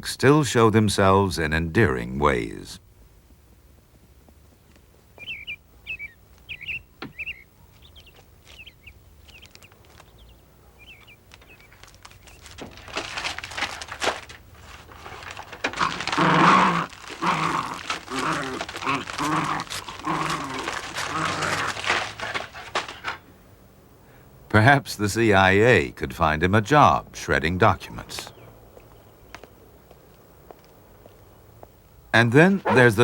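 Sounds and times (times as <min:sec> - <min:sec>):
paper tearing: 0:11.8 - 0:23.2
dog growling: 0:15.6 - 0:22.9, 0:32.4 - 0:33.0
dog whining: 0:32.6 - 0:33.0.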